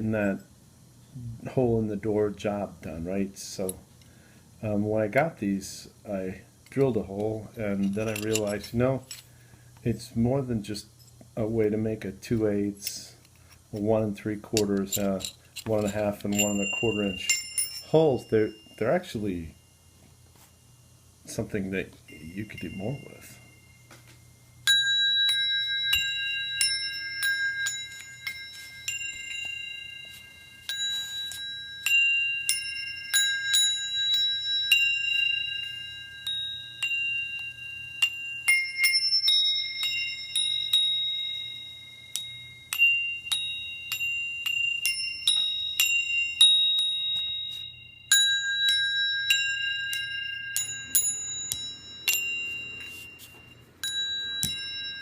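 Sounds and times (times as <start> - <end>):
steel hole saws ringing: 6.7 - 9.2, 14.5 - 19.8, 21.3 - 24.0, 24.6 - 55.0.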